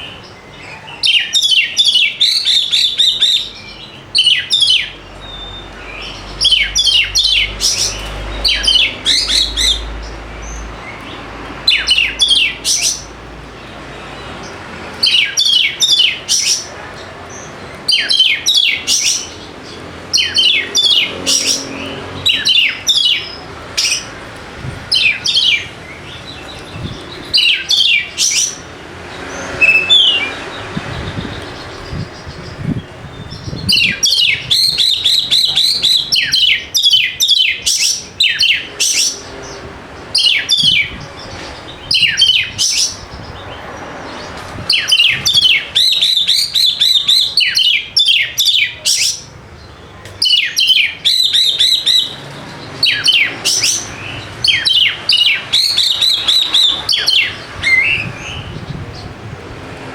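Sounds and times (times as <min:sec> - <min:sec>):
bird whistling sharp notes: 0:29.6 - 0:32.0, 0:32.7 - 0:39.2, 0:50.2 - 0:52.2.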